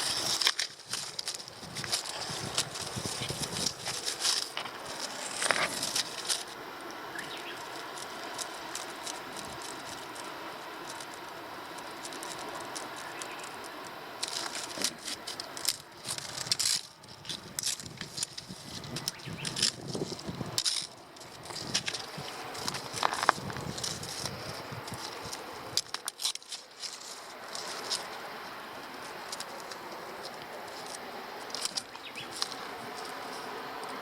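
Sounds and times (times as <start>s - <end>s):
dry grass rustling: 0.0s - 34.0s.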